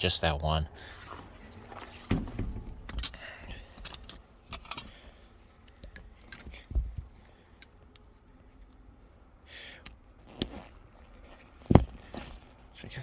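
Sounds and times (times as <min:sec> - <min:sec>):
dull thump: 0:01.8 - 0:02.9, 0:06.6 - 0:07.1, 0:11.6 - 0:12.2.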